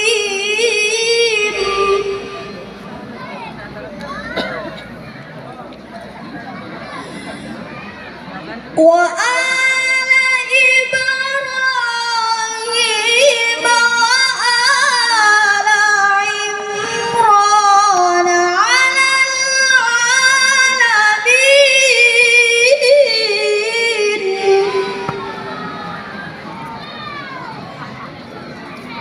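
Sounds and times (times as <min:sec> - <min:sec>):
child reciting melodically: 0:00.0 - 0:04.4, 0:08.8 - 0:25.9.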